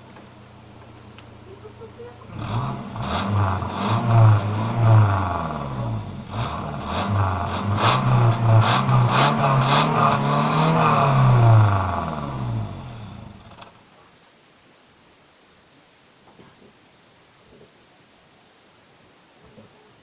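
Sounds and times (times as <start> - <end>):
car engine revving: 0.0 - 13.7
exhaust whistle chirping: 2.4 - 13.7.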